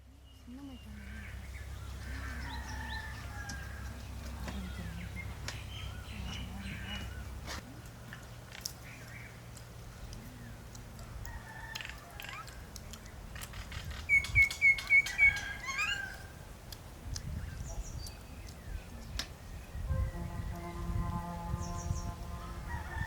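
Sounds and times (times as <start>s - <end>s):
bird calling: 0.3s - 16.4s.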